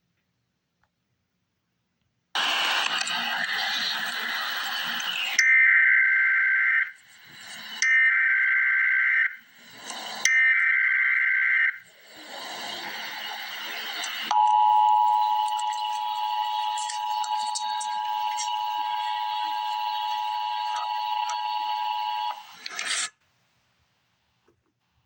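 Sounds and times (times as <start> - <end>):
two-tone attention signal: 12.7 - 22.5.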